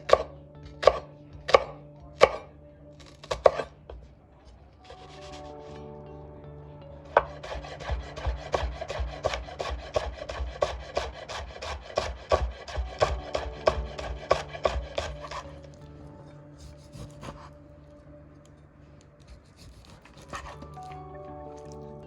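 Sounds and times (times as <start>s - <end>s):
food prep strokes on wooden board: 7.2s - 15.6s.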